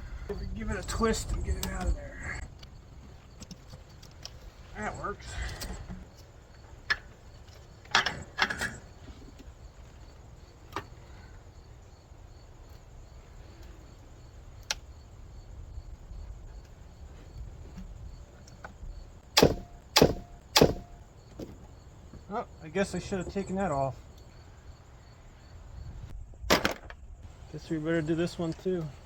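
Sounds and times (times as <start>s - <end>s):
clicks and knocks of car parts: 6.8s - 9.5s, 18.5s - 21.7s.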